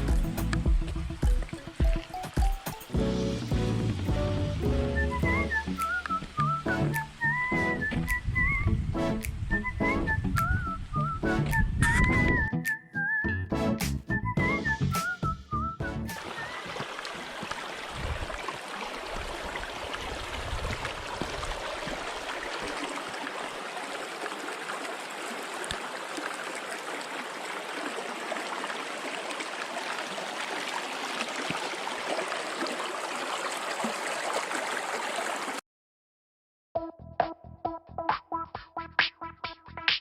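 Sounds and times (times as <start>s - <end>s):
stream water rushing: 0.0s - 8.2s, 16.1s - 35.6s.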